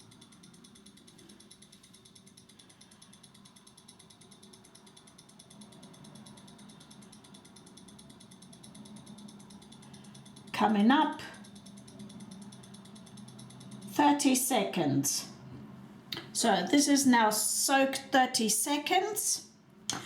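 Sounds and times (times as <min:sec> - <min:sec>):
timer ticking: 0:00.0 - 0:14.5
low room hum: 0:00.0 - 0:20.0.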